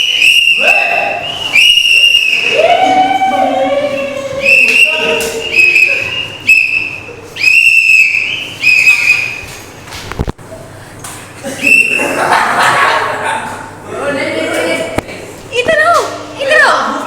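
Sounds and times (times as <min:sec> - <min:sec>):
whistle blasts: 0:00.0 - 0:03.5, 0:04.4 - 0:09.5, 0:11.6 - 0:12.2.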